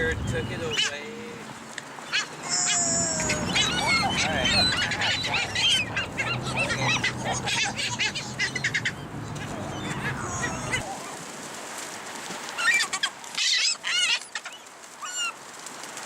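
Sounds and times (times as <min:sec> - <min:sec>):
geese honking: 0:02.5 - 0:10.9.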